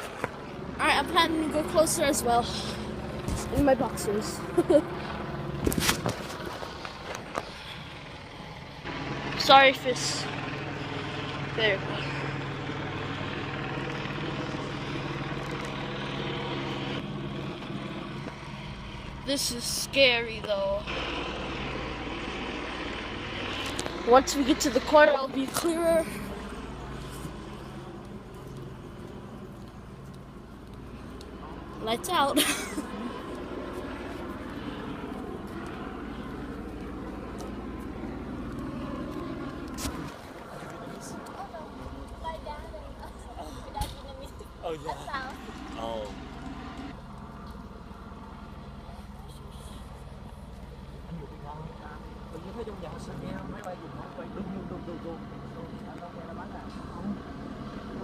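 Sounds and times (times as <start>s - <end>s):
helicopter high hiss: 0.0s - 5.6s, 6.3s - 41.6s
helicopter rotor drone: 0.0s - 58.0s.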